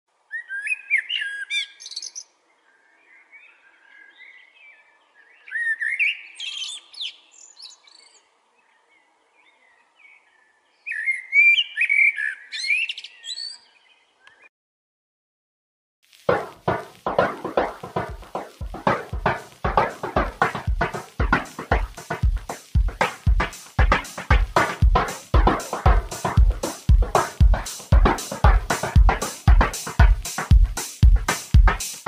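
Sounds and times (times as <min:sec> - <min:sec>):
blackbird singing: 0:00.3 - 0:14.5.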